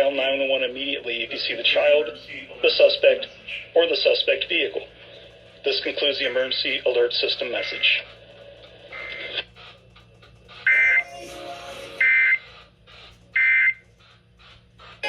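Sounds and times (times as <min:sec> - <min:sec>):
two-tone digital data bursts: 0:10.7 - 0:11.1, 0:12.0 - 0:12.5.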